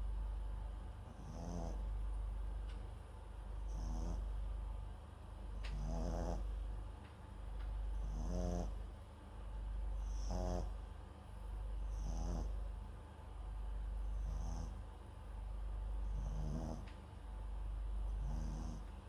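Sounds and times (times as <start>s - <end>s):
small dog snoring: 1.0s - 2.1s, 3.5s - 4.5s, 5.5s - 6.7s, 7.9s - 9.0s, 10.0s - 10.9s, 11.8s - 12.8s, 13.9s - 15.0s, 15.9s - 17.0s, 18.0s - 19.0s.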